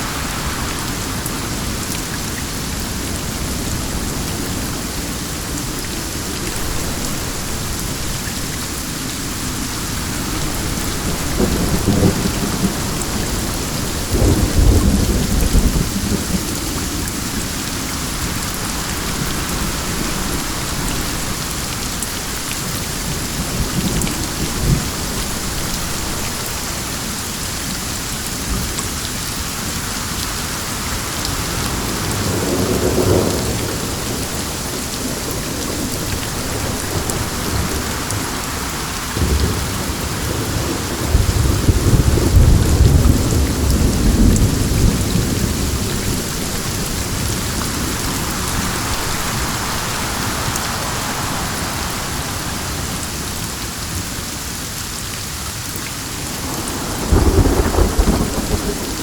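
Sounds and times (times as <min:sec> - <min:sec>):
steady rain hissing: 0:00.0 - 0:59.0
low thunder rumbles: 0:09.4 - 0:21.7, 0:31.4 - 0:53.5, 0:56.2 - 0:59.0.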